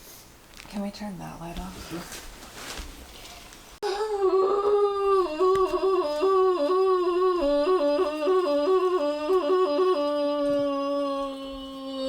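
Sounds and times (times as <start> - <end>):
woman vocalizing long warbling tone: 3.8 - 12.0.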